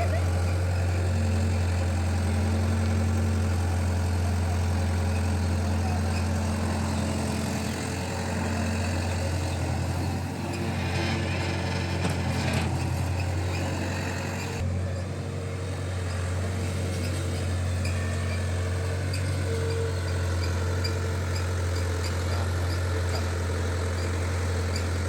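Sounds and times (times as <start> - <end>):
diesel engine humming: 0.0 - 25.0.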